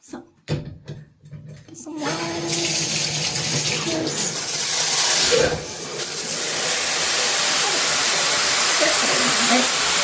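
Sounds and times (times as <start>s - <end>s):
shower water spraying: 2.0s - 10.0s.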